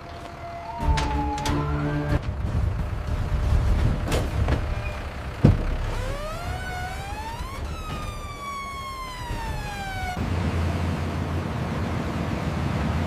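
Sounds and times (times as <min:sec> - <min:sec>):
emergency siren wailing: 0:00.0 - 0:02.4, 0:05.7 - 0:10.3
low rumble: 0:00.8 - 0:11.5.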